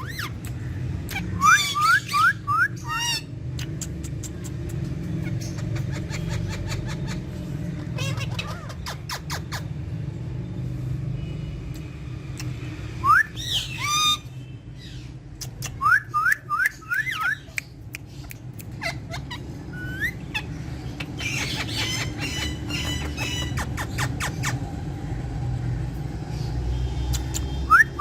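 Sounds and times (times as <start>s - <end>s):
parrots whistled chirps: 1.1s - 3.3s, 13.0s - 14.3s, 15.4s - 17.7s, 18.6s - 20.5s, 27.1s - 28.0s.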